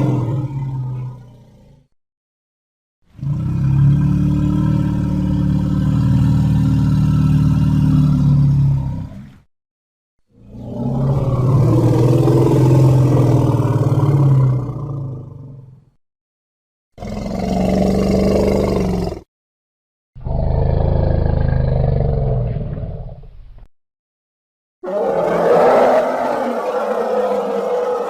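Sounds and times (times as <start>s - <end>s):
elephant growls and bellows: 0.0s - 1.9s, 3.1s - 9.4s, 10.4s - 15.6s, 17.0s - 19.3s, 20.2s - 23.2s, 24.8s - 28.0s.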